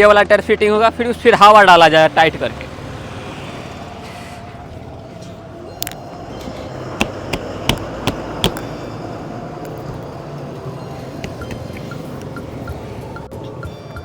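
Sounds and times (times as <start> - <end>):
sharp knocks on metal: 7.0 - 8.6, 11.2 - 11.9.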